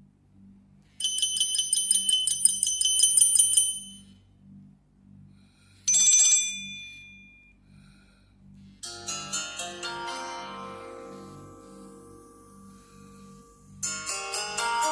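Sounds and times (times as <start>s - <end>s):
bell-like phone trill: 1.0s - 4.0s
ringing chime: 1.0s - 4.2s, 5.9s - 7.6s.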